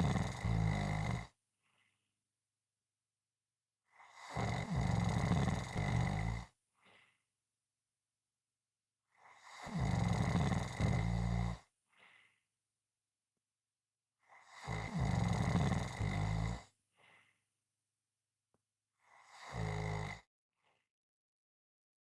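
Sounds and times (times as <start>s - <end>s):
person snoring loudly: 0.0s - 1.3s, 4.0s - 6.5s, 9.4s - 11.6s, 14.5s - 16.7s, 19.1s - 20.3s
short faint breath: 11.9s - 12.4s, 17.0s - 17.4s.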